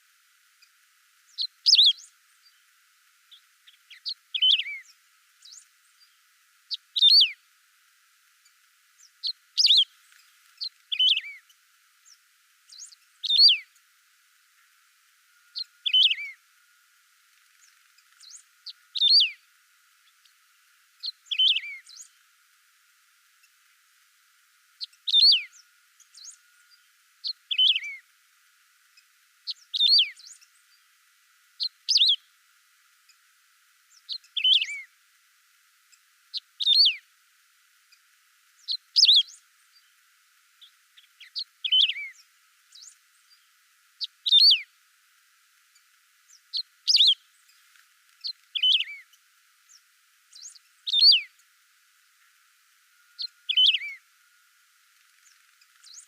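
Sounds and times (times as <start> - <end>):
finch singing: 1.3 - 2.6, 3.3 - 7.4, 8.4 - 13.8, 15.4 - 16.4, 17.5 - 19.4, 21.0 - 22.2, 24.8 - 28.0, 29.4 - 30.9, 31.6 - 32.3, 33.9 - 34.9, 36.3 - 37.0, 38.6 - 39.9, 40.6 - 44.7, 45.8 - 51.4, 53.1 - 54.0, 55.1 - 56.0.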